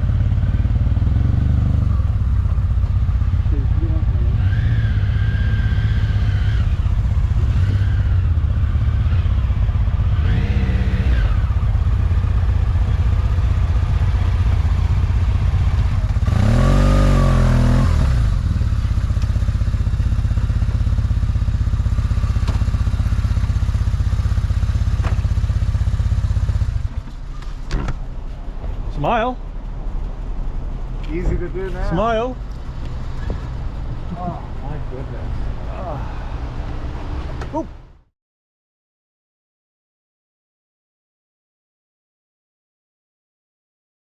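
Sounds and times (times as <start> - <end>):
motorcycle engine running: 0.0 - 35.0
vehicle passing close by: 29.8 - 37.8.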